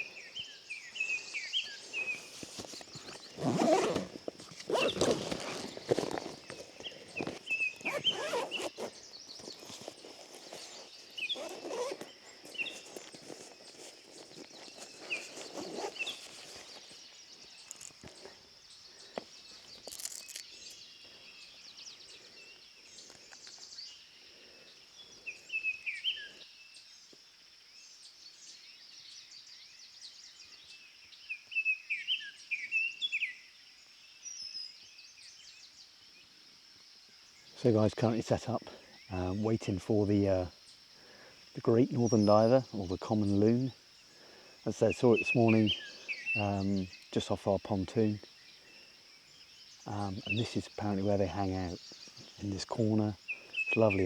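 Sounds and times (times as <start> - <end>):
songbirds chirping: 0.0 - 54.0
steady high-pitched hiss: 0.0 - 54.0.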